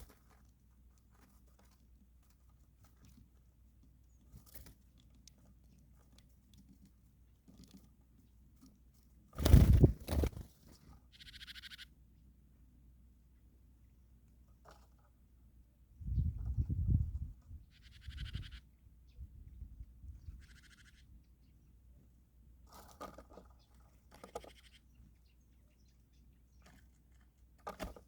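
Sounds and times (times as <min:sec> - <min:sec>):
birds cracking seed: 0:00.0 - 0:11.8, 0:22.6 - 0:25.2, 0:26.5 - 0:28.0.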